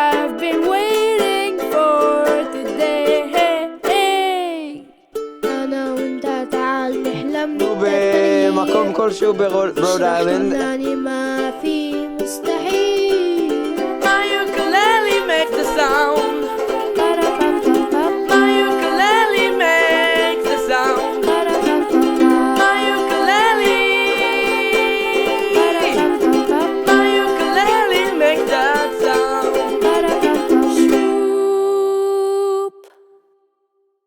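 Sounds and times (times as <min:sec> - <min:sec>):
ukulele ensemble playing: 0:00.0 - 0:33.0.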